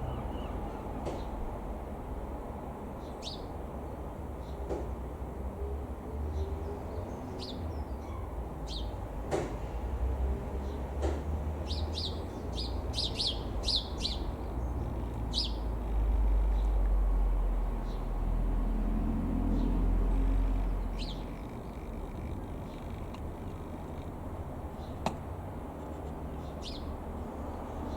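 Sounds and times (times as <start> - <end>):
small birds chirping: 0.0 - 1.6, 3.0 - 3.6, 6.3 - 9.0, 10.5 - 27.9.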